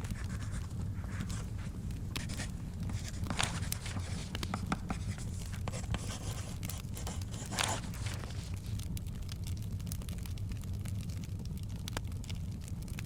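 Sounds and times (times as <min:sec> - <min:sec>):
pen scratching on paper: 0:00.0 - 0:01.6, 0:02.2 - 0:08.1
pages turning: 0:00.0 - 0:08.8
fire crackling: 0:00.0 - 0:13.0.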